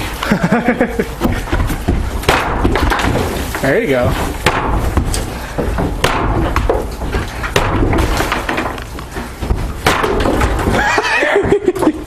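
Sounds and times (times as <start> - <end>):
hammer striking a wall: 1.2 - 3.4, 4.3 - 8.7, 9.4 - 10.8
small knocks and rattling: 1.2 - 12.0
wall material cracking and breaking: 1.2 - 12.0.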